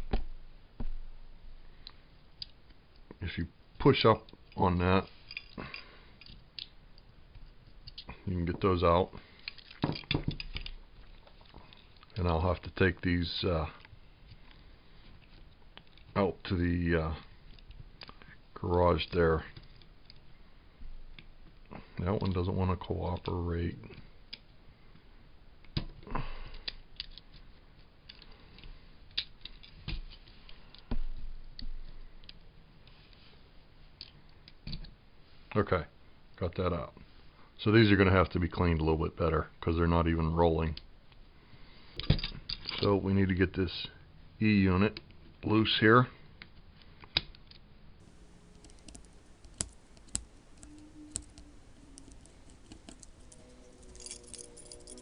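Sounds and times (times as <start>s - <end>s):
metal parts clicking and scraping: 4.5s - 6.7s, 9.3s - 12.2s, 48.2s - 55.0s
light metallic rattling: 48.0s - 55.0s.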